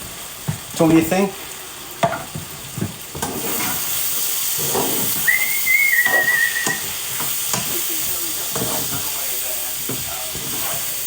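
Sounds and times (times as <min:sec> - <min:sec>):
food sizzling in frying pan: 0:00.0 - 0:11.0
thin high whistle: 0:05.2 - 0:06.9.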